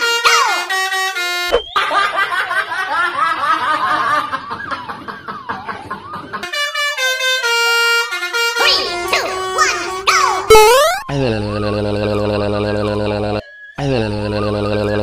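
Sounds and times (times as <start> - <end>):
multi-tone bus horn tune: 0.0 - 1.5, 6.4 - 10.5.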